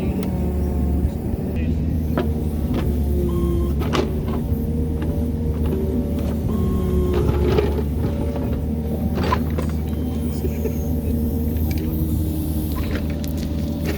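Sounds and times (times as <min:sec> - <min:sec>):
diesel engine running: 0:00.0 - 0:13.9
clanks and knocks: 0:02.1 - 0:10.0.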